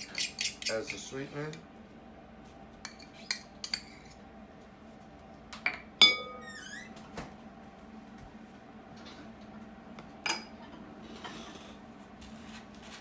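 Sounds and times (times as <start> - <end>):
kitchenware clinking: 5.7 - 6.6, 10.2 - 11.5.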